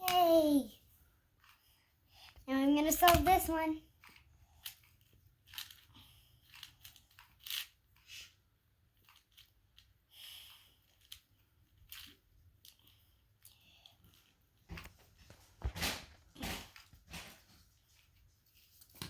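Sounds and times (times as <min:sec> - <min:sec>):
puzzle cube clicking and scraping: 0:02.8 - 0:09.9.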